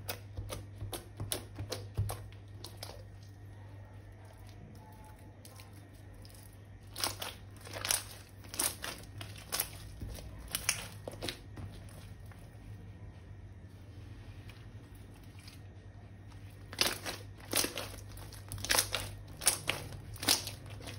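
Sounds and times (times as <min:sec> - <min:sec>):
low steady hum: 0:00.0 - 0:20.9
slime crackling when squeezed: 0:16.7 - 0:20.9.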